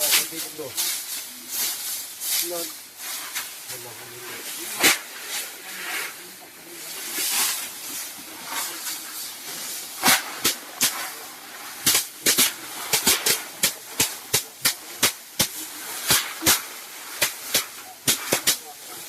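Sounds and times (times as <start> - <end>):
steady hiss: 0.0 - 19.0
sharp crisp snaps: 11.8 - 18.6.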